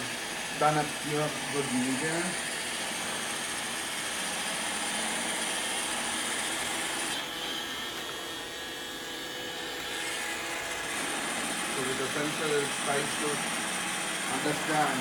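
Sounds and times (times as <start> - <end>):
robot vacuum motor and brushes: 0.0 - 15.0.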